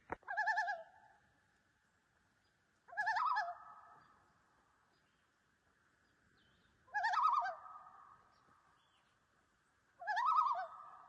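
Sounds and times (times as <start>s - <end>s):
loon tremolo calls: 0.2s - 1.1s, 2.9s - 4.2s, 6.8s - 8.9s, 10.0s - 11.0s.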